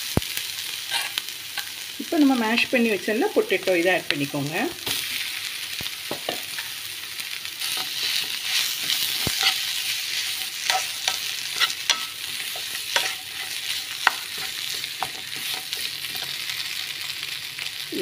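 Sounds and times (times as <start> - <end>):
onions sizzling in oil: 0.0 - 18.0
spoon scraping and tapping pan: 6.1 - 6.7, 7.7 - 16.4.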